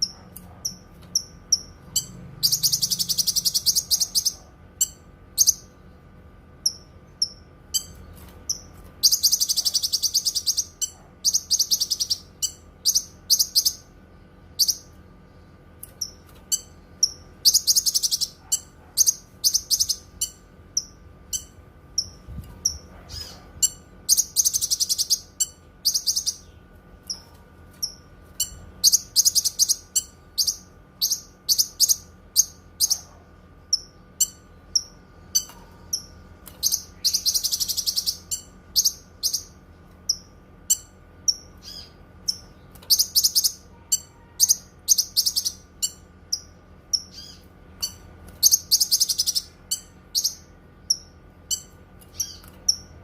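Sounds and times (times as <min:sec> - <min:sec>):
bird high-pitched chirps: 0:00.0 - 0:05.8, 0:06.6 - 0:13.9, 0:15.9 - 0:53.0
bird fast trills: 0:00.7 - 0:05.7, 0:33.7 - 0:53.0.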